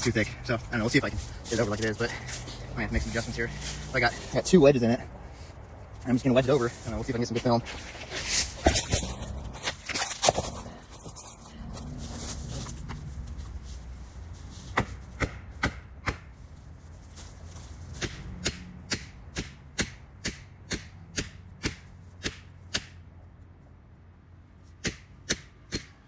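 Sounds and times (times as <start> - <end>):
wedges being hammered into tree: 14.7 - 16.4, 17.9 - 23.0, 24.8 - 26.0.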